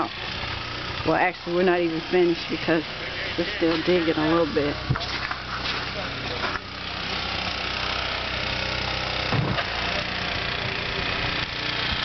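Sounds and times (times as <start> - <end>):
engine running: 0.0 - 12.0.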